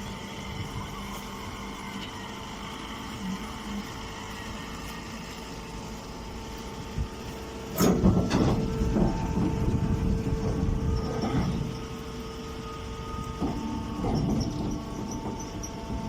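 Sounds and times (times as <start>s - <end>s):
baler machine humming: 0.0s - 16.0s
irregular knocking and rumble: 7.7s - 12.2s, 13.2s - 16.0s.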